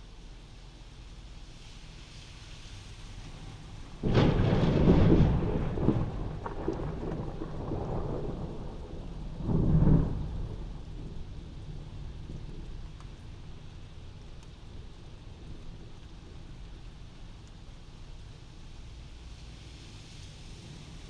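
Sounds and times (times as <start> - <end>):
steady rain: 0.0 - 21.0
thunder crack and rumble: 3.4 - 17.9.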